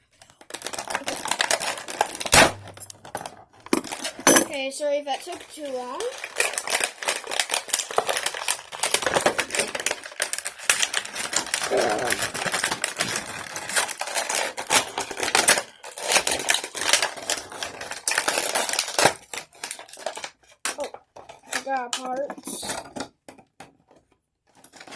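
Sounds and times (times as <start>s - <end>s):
plastic packaging crackling: 0.1s - 4.2s, 4.8s - 21.9s.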